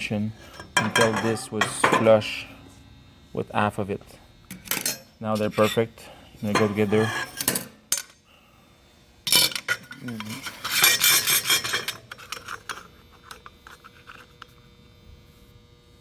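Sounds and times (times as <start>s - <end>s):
metal parts clinking and rattling: 6.5s - 8.1s, 9.3s - 14.3s.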